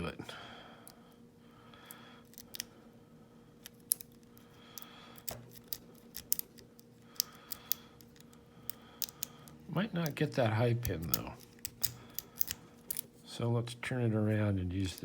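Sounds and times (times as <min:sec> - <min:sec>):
lock pick scraping in padlock: 0:10.8 - 0:13.1.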